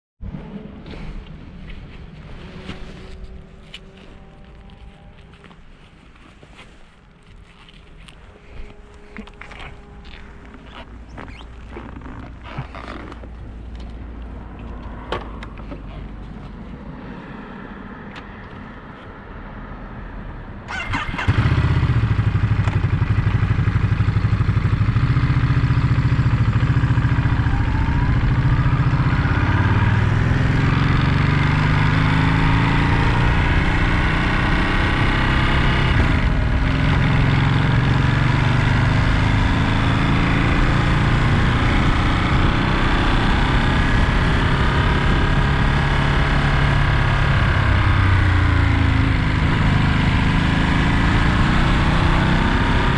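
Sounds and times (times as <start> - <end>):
motorcycle engine starting and idling: 20.7 - 51.8.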